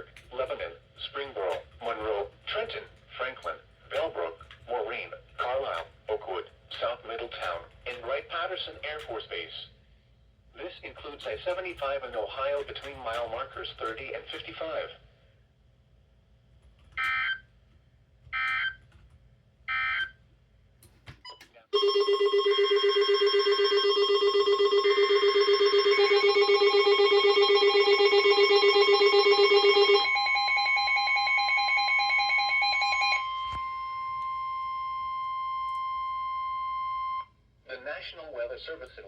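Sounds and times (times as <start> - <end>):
steady alert tone: 23.4 - 33.4.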